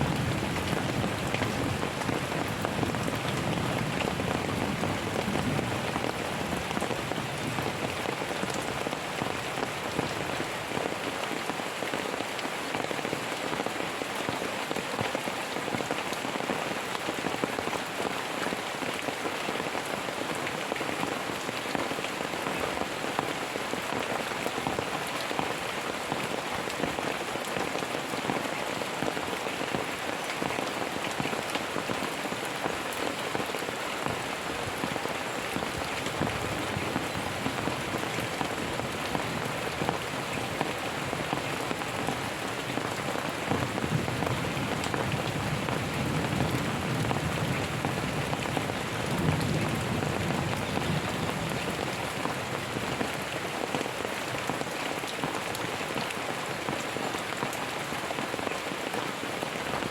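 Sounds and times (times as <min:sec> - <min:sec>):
steady rain: 0:00.0 - 0:59.9
thunder rumbling: 0:43.5 - 0:52.0.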